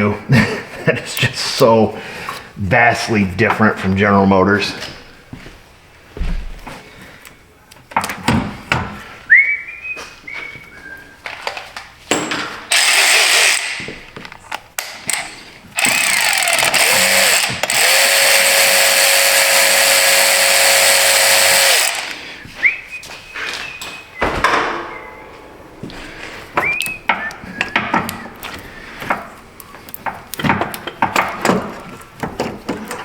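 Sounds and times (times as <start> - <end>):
clanks of tools and parts: 11.2 - 17.9, 29.9 - 33.0
power tool running: 12.7 - 13.9, 15.1 - 22.3.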